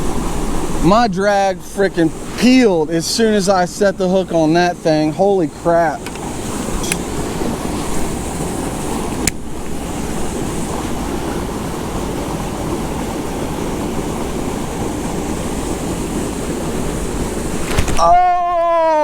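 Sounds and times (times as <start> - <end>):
sharp click: 6.0 - 7.1.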